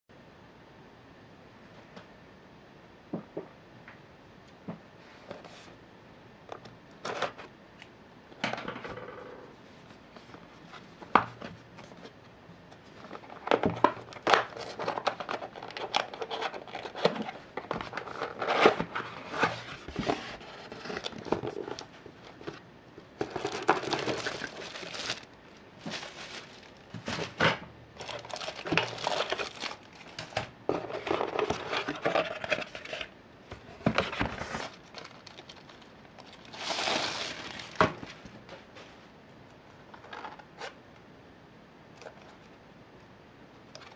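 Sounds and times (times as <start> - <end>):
crinkling handling noise: 6.4 - 8.7, 9.6 - 41.0, 43.6 - 43.9.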